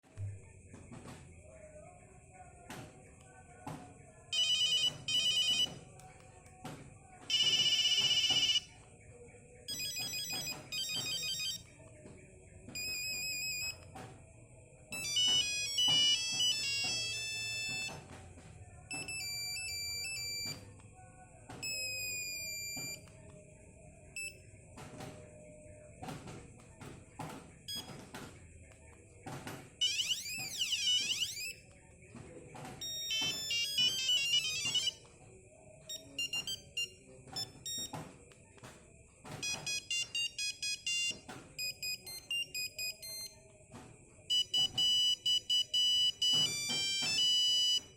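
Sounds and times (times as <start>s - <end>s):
mobile phone ringtone beeping melodies: 4.3s - 5.8s, 7.3s - 8.9s, 9.6s - 11.7s, 12.7s - 14.0s, 14.9s - 18.1s, 18.9s - 20.8s, 21.5s - 23.2s, 24.1s - 24.4s, 27.6s - 28.1s, 29.8s - 31.7s, 32.8s - 35.2s, 35.8s - 38.2s, 39.3s - 43.4s, 44.3s - 47.9s.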